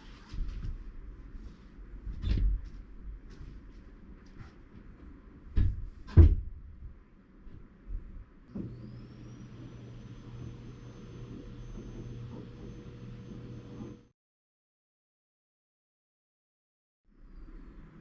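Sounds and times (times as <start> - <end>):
vacuum cleaner running: 8.5 - 14.1.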